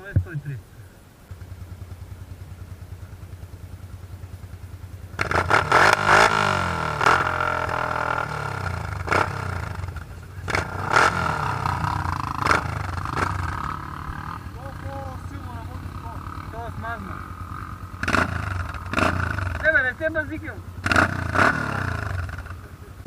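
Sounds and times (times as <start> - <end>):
atv engine idling and revving: 0.0 - 23.0
sharp clattering: 6.9 - 19.8.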